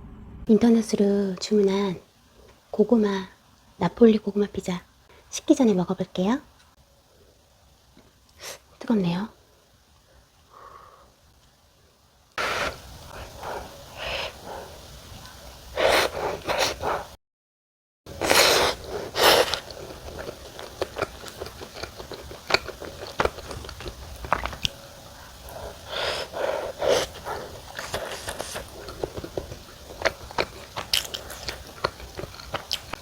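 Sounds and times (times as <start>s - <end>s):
sharp huffs of breath: 10.2s - 11.2s, 12.4s - 17.2s, 25.2s - 28.7s
wet chewing: 12.4s - 17.2s, 18.2s - 33.0s.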